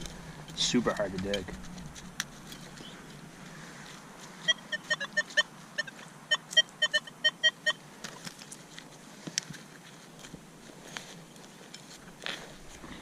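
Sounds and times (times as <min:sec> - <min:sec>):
metal detector beeping: 0:04.4 - 0:07.8.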